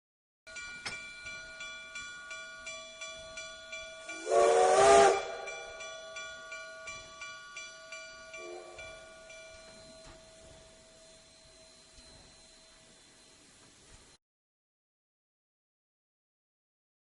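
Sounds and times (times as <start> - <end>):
steam whistle blowing: 4.1 - 5.8
hammer ringing on anvil: 8.3 - 11.3.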